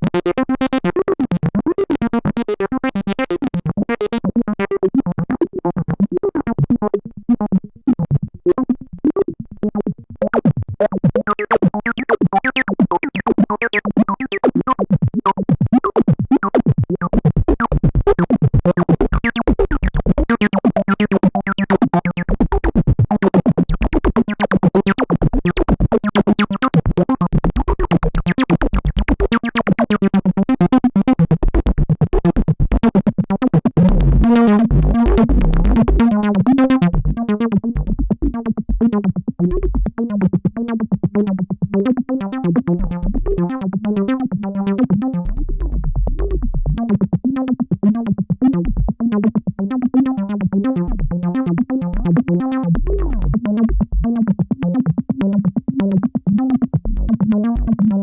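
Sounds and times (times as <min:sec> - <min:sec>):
squelchy acid bass: 0:16.7 - 0:58.0
synthesizer bass line: 0:25.2 - 0:29.6, 0:33.6 - 0:41.0, 0:41.6 - 0:58.0
deep low pulse: 0:33.8 - 0:36.0, 0:36.8 - 0:38.8, 0:39.4 - 0:40.0, 0:42.8 - 0:43.5, 0:45.2 - 0:46.9, 0:48.6 - 0:49.1, 0:50.9 - 0:54.2, 0:56.7 - 0:58.0.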